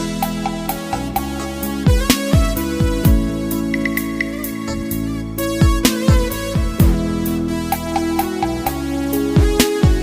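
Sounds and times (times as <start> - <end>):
sustained synth chords: 0.0 - 9.1
deep kick drum: 1.9 - 4.4, 5.6 - 7.2, 9.4 - 10.0.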